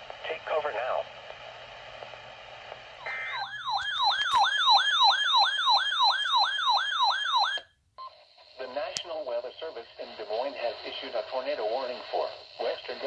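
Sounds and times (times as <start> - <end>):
data tones: 3.0 - 4.5
rising and falling siren wail: 3.1 - 7.6.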